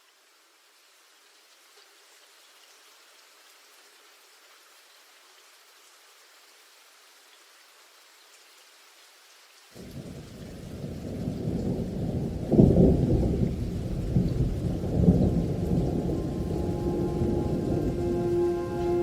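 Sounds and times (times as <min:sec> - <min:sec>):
rain hissing: 0:09.4 - 0:19.0
thunder rumbling: 0:09.8 - 0:19.0.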